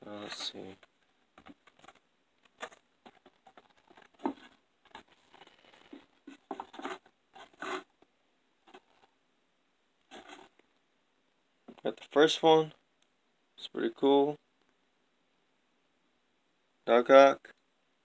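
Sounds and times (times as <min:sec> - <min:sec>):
paper and cardboard rustling: 0:00.1 - 0:07.9, 0:08.6 - 0:09.1, 0:10.1 - 0:10.5.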